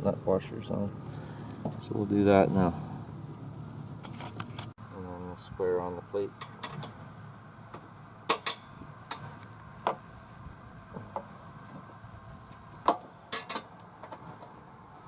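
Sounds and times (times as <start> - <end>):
metal bolts and washers clinking: 6.4 - 7.0, 8.3 - 9.3, 13.3 - 14.2.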